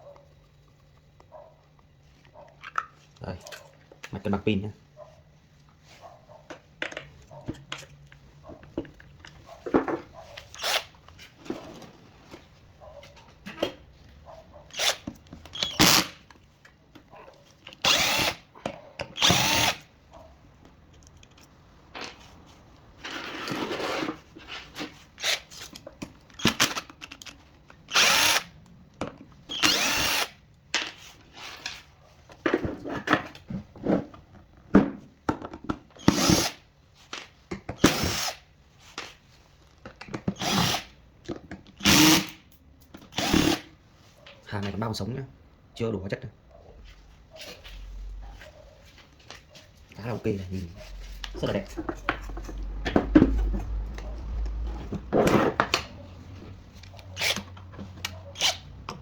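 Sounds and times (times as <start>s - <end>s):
power drill-driver running: 17.8s - 18.4s, 19.2s - 19.8s, 27.9s - 28.4s, 29.5s - 30.3s, 37.9s - 38.4s, 40.4s - 40.9s, 41.8s - 42.3s, 43.2s - 43.6s.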